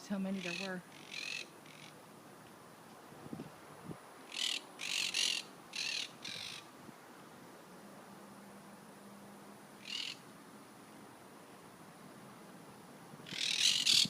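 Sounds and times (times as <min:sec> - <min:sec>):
parrots squawking harshly: 0:00.4 - 0:01.9, 0:04.3 - 0:06.6, 0:09.8 - 0:10.2, 0:13.3 - 0:14.0.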